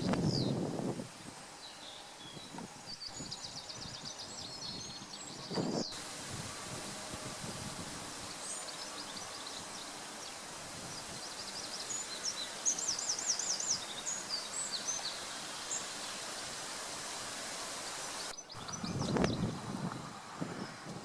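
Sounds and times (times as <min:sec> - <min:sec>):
small birds singing: 0:00.0 - 0:21.0
bird trill: 0:01.6 - 0:16.4.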